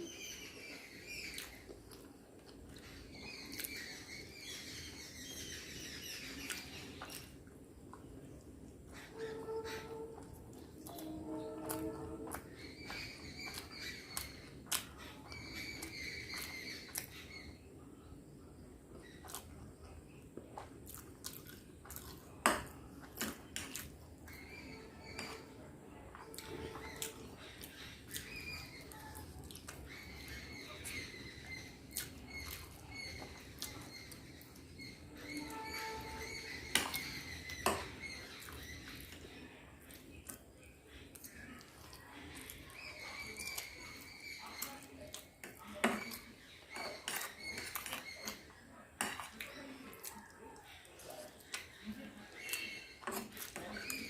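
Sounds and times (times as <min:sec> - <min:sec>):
close chewing of noodles: 0:20.6 - 0:22.4.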